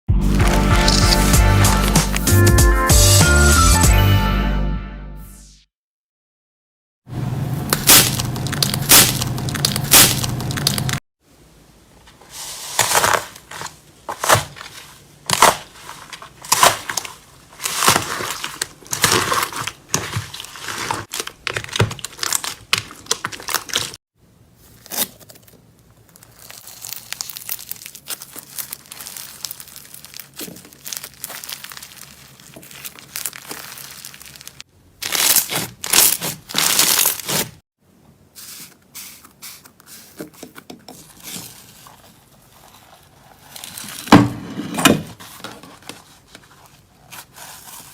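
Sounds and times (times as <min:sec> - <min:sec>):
slime squeezed by hand crackling: 0:26.1 - 0:37.5.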